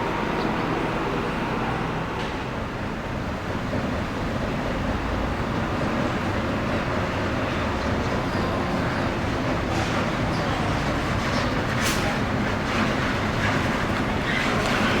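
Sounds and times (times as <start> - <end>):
diesel bus engine rumbling: 0.0 - 15.0
traffic noise: 0.0 - 15.0.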